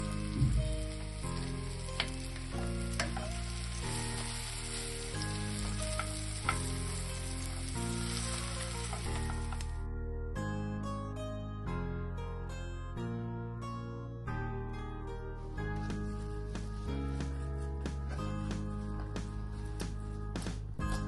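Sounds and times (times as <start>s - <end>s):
food sizzling in hot oil: 0.0s - 9.7s
background music: 0.0s - 21.0s.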